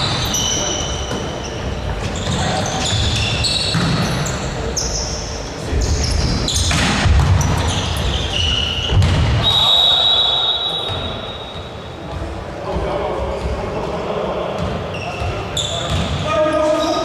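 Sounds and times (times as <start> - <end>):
sneakers squeaking on floor: 0.0 - 17.0
ball thudding: 8.8 - 9.4.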